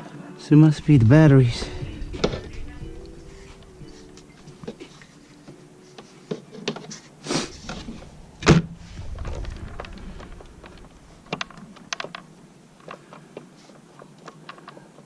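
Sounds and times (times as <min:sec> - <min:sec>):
low rumble: 0:00.7 - 0:05.2, 0:07.5 - 0:12.6
loud thump: 0:00.8 - 0:04.9, 0:07.5 - 0:12.3.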